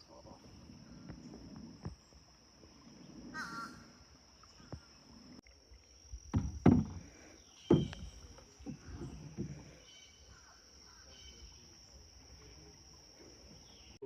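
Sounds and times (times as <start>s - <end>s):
harsh animal calls: 3.0s - 4.0s.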